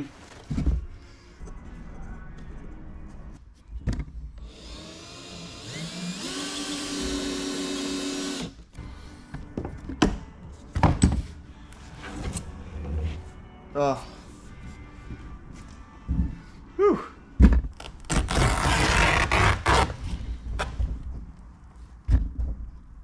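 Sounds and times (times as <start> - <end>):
power tool motor: 4.5 - 8.5.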